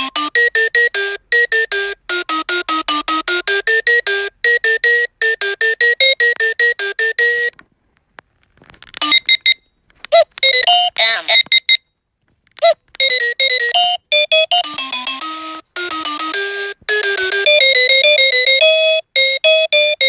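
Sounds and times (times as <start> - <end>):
electronic alarm melody: 0.0 - 7.5, 10.4 - 11.8, 13.0 - 20.0.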